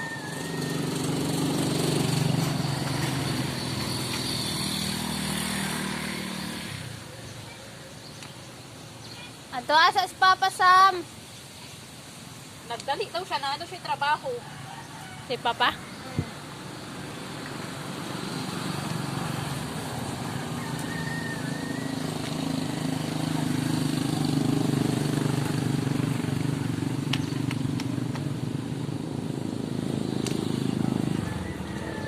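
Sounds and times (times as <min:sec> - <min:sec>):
motorcycle engine running: 0:00.6 - 0:06.9, 0:21.4 - 0:32.0.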